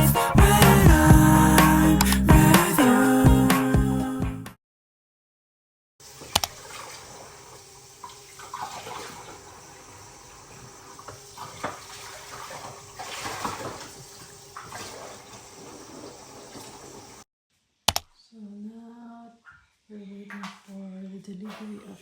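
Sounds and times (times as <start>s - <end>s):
running water: 6.0s - 17.2s
sharp click: 17.9s - 18.1s.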